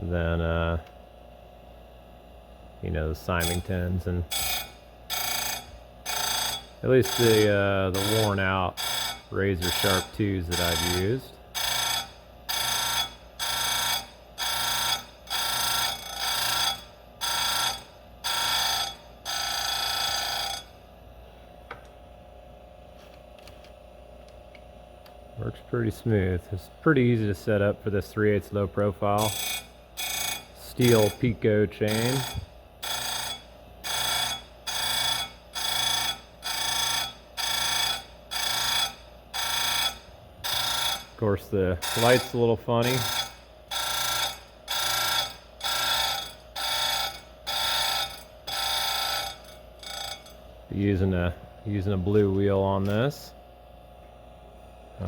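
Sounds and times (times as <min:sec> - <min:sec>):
grinder wheel grinding saw chain: 0:03.3 - 0:20.7, 0:29.0 - 0:51.1.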